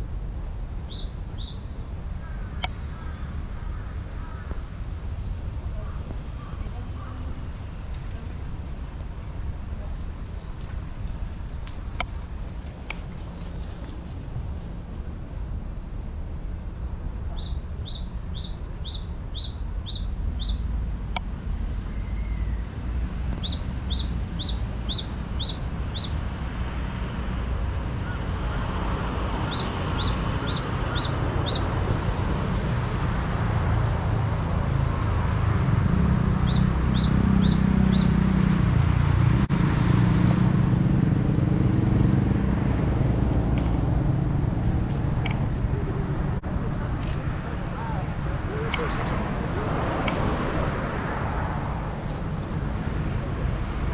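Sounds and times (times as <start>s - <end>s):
steady low rumble: 0.0s - 25.0s, 38.7s - 53.9s
songbird singing: 0.6s - 20.8s, 21.6s - 26.3s, 28.0s - 32.1s, 36.0s - 38.6s, 43.3s - 53.9s.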